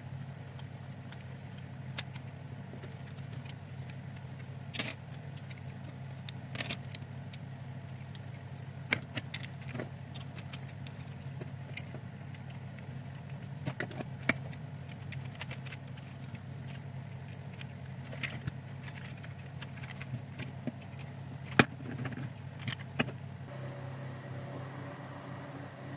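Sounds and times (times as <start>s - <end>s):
plastic parts clicking and rattling: 8.0s - 23.2s
steady low hum: 23.4s - 25.9s.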